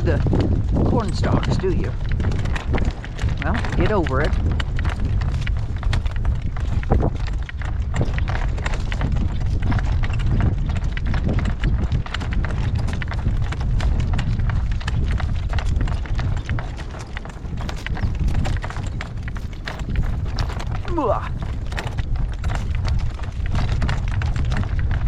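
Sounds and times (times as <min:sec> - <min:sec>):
carriage knocks and rattles: 0:00.0 - 0:25.0
horse hooves clip-clopping on dirt: 0:00.0 - 0:25.0
wind buffeting microphone: 0:00.0 - 0:25.0.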